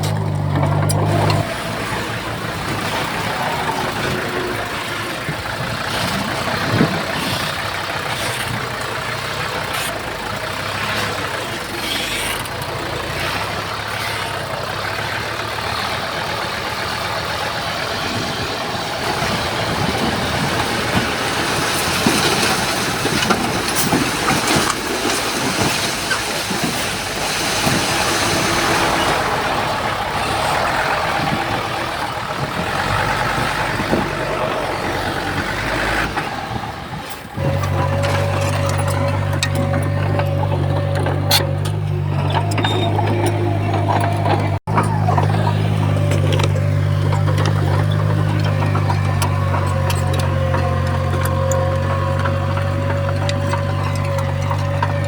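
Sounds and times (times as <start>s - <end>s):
diesel machinery running: 0.0s - 55.0s
metal clanks: 35.4s - 55.0s.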